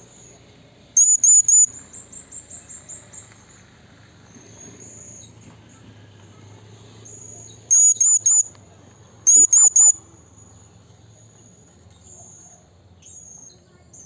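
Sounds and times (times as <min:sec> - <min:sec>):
parrot squeaky calls: 0:01.0 - 0:01.7, 0:07.7 - 0:08.5, 0:09.3 - 0:10.0
thin high bird calls: 0:01.0 - 0:03.0, 0:07.3 - 0:08.5, 0:09.3 - 0:10.0.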